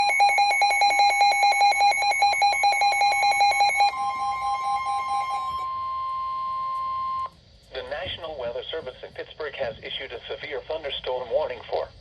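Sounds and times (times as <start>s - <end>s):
fast electronic beeping: 0.0s - 7.3s
steady high alarm tone: 0.0s - 7.4s.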